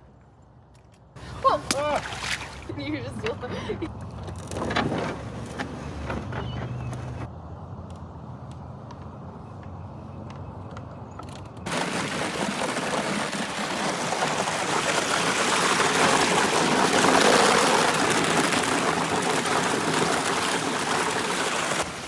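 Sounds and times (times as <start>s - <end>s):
ice crackling against canoe hull: 11.6s - 22.0s.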